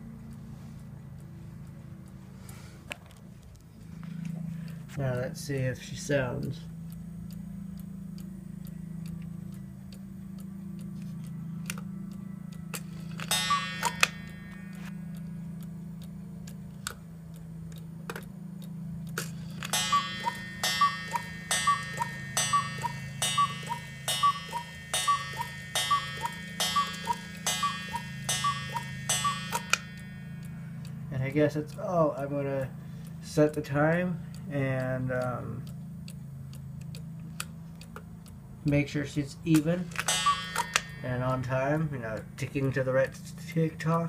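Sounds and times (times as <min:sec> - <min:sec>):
clock ticking: 0:00.0 - 0:44.0
two-note cuckoo call: 0:13.3 - 0:14.9, 0:19.6 - 0:31.0, 0:40.0 - 0:41.7.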